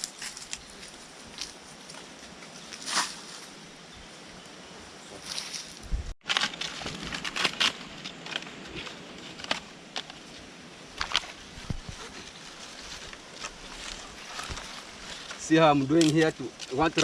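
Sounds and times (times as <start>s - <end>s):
twigs rustling: 0.0s - 3.6s, 5.1s - 17.0s
sticks snapping: 16.0s - 16.8s.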